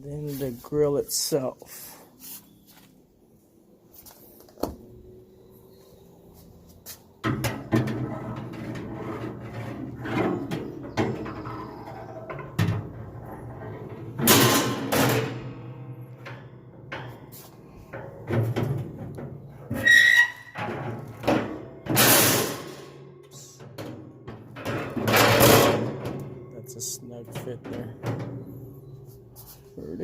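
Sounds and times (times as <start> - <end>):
metal grill grates clanking: 7.2 - 23.0, 23.7 - 28.5.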